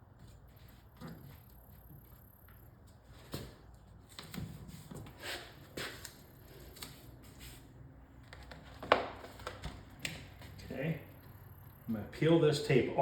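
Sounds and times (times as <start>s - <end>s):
vinyl and tape rustling: 8.2s - 10.6s.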